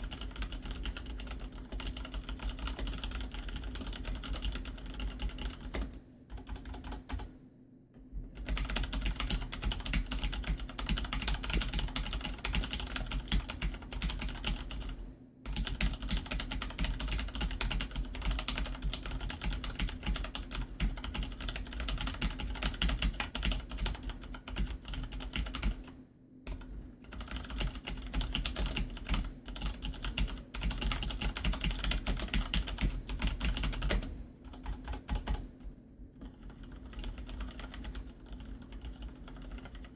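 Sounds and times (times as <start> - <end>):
fast mechanical keyboard typing: 0.0 - 7.4, 8.3 - 35.6, 36.2 - 39.9.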